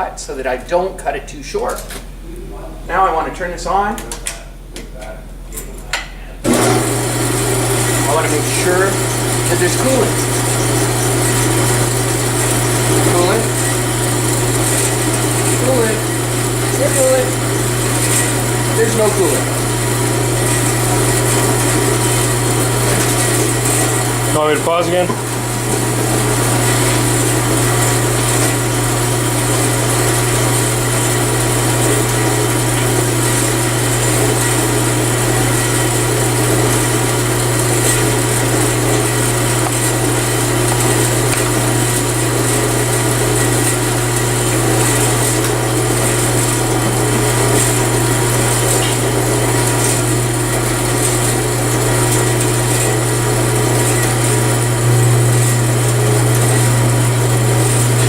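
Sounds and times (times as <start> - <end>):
bandsaw running: 6.4 - 58.0.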